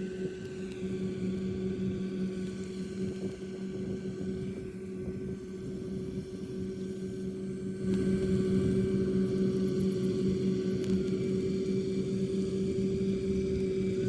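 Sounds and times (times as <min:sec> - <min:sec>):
combine harvester drone: 0:00.0 - 0:14.0.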